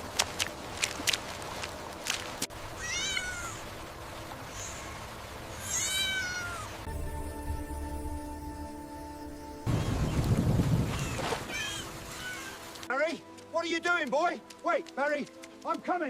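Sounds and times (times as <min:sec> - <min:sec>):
background music: 0:02.4 - 0:10.0, 0:11.3 - 0:16.0
cat meowing: 0:02.7 - 0:03.6, 0:05.6 - 0:06.8, 0:11.0 - 0:12.6.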